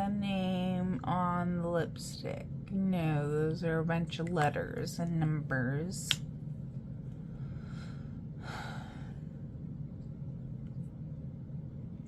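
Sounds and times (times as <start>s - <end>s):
low room hum: 0.0s - 12.0s
woman breathing softly: 7.2s - 9.6s.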